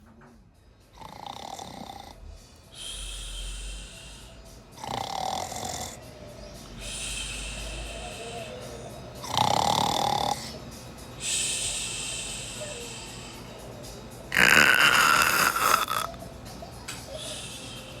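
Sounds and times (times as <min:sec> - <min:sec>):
cat snoring: 0:01.0 - 0:02.3, 0:04.8 - 0:06.0, 0:09.2 - 0:10.6, 0:14.3 - 0:16.2.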